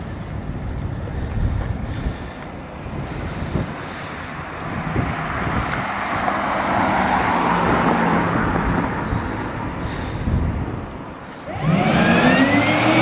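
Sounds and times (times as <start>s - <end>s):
low steady engine hum: 0.0s - 6.2s
road and wind noise: 0.0s - 13.0s
engine revving: 11.5s - 13.0s.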